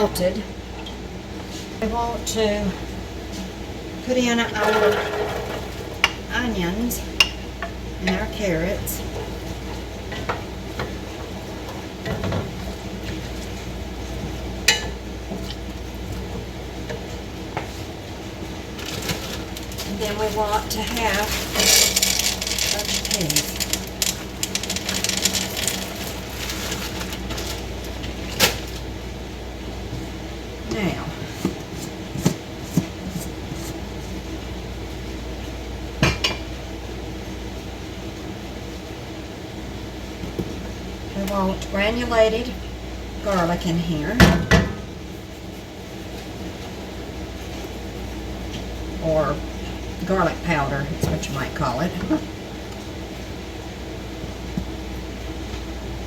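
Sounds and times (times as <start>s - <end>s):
air conditioner humming: 0.0s - 56.0s
spoon stirring and scraping pan: 4.4s - 6.1s.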